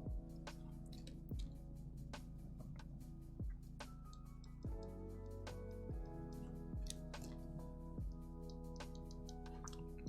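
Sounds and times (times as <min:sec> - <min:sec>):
low kick drum: 0:00.0 - 0:00.5, 0:01.3 - 0:01.7, 0:02.6 - 0:03.8, 0:04.6 - 0:05.0, 0:05.8 - 0:07.1, 0:07.9 - 0:08.4.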